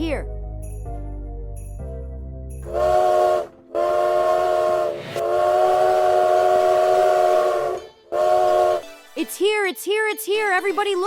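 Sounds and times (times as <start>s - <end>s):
steam locomotive whistle blasts: 2.6s - 9.0s.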